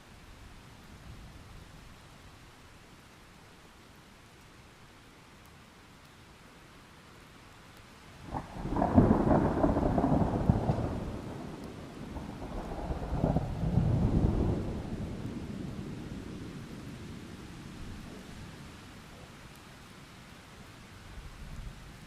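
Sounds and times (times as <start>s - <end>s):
rain hiss: 0.0s - 22.0s
thunder crack and rumble: 8.3s - 18.1s.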